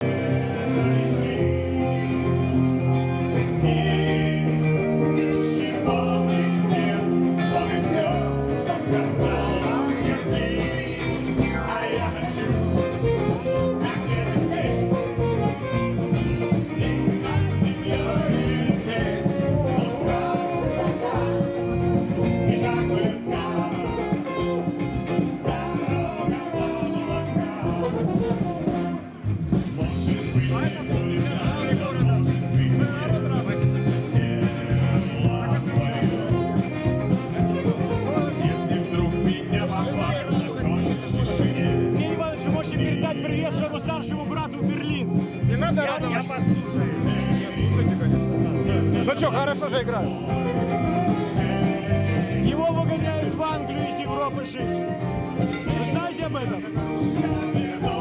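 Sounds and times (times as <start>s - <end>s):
band music with held notes: 0.0s - 58.0s
steady beat: 12.4s - 58.0s.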